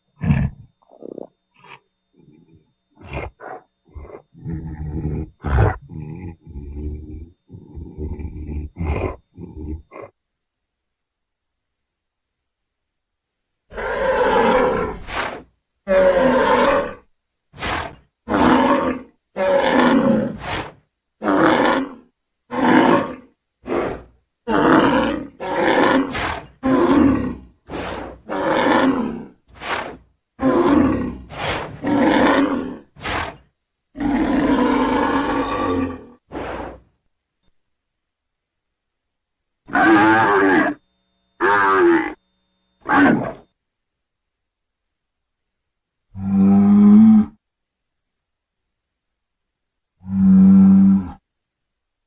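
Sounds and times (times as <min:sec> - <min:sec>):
dinosaur roars and growls: 0:00.2 - 0:10.1, 0:13.7 - 0:17.0, 0:17.6 - 0:33.4, 0:34.0 - 0:36.9, 0:39.7 - 0:40.8, 0:42.9 - 0:43.4, 0:46.1 - 0:47.4, 0:50.0 - 0:51.2.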